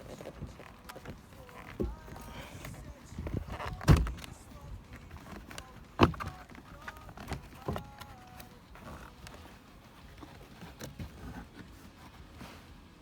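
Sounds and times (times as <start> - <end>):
knocks on car interior trim: 3.4 - 4.3.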